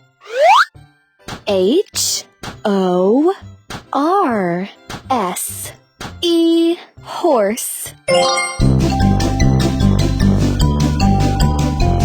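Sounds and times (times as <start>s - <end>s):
background music with steady beat: 1.2s - 6.6s, 8.6s - 12.0s.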